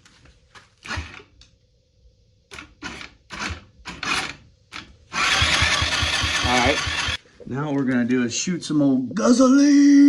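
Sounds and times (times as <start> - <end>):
electric starter cranking engine: 0.8 - 1.3, 2.5 - 7.2.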